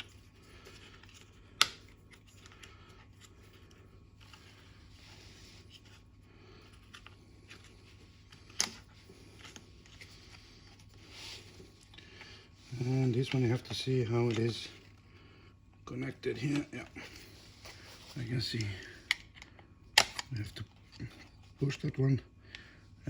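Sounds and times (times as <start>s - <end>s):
plastic parts being handled: 0.0s - 15.1s.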